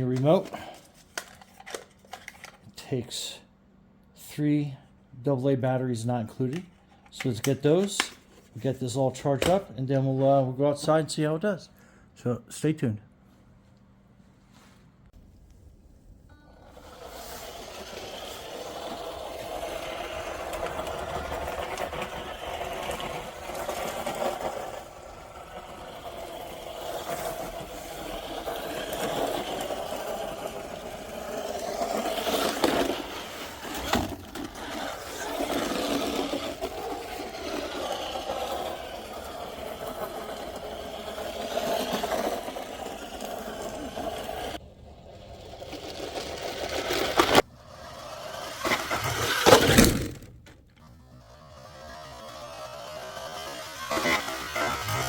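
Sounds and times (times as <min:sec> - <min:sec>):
electric motor whining: 0:46.9 - 0:55.0.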